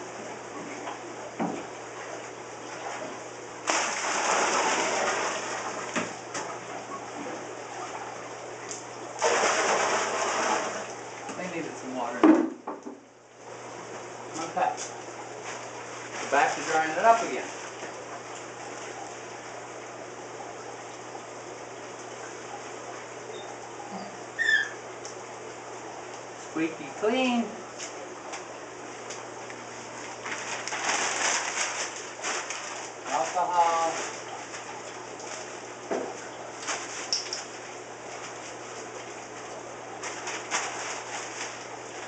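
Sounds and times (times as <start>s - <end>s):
water pouring into a bucket: 3.6s - 6.0s, 9.2s - 11.0s.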